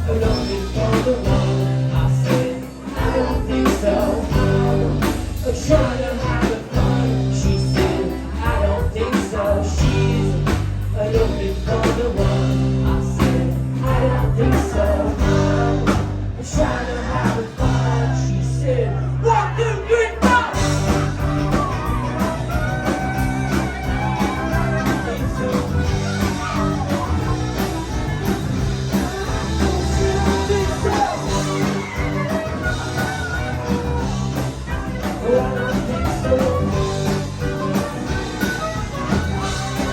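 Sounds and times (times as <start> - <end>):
live rock band playing: 0.0 - 39.9.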